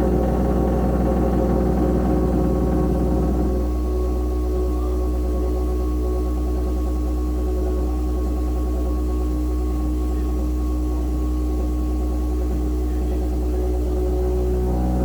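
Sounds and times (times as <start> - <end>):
plumbing drone in wall: 0.0 - 6.5, 10.9 - 15.0.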